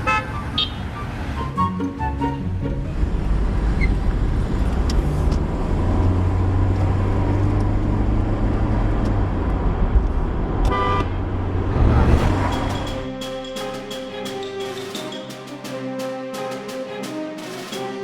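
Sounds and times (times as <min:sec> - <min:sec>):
car horn honk: 0:00.0 - 0:01.3, 0:10.7 - 0:11.1
car engines running: 0:02.1 - 0:13.0.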